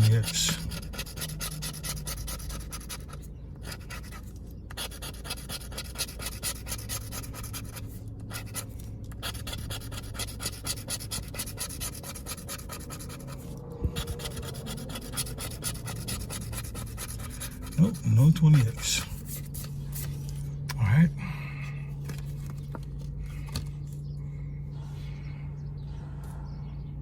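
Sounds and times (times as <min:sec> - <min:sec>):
scratching a lottery ticket: 0:00.0 - 0:20.6.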